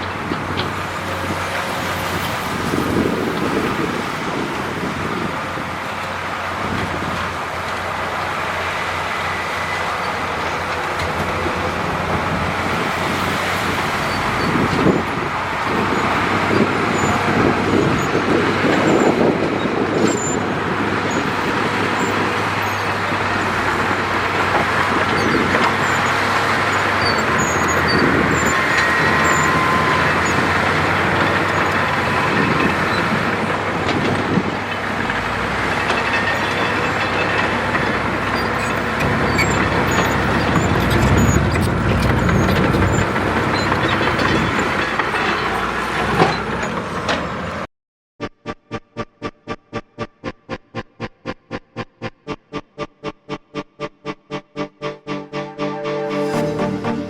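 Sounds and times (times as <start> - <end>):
heavy diesel machinery running: 0.0 - 47.7, 49.1 - 57.0
thin high squeals: 25.2 - 33.1.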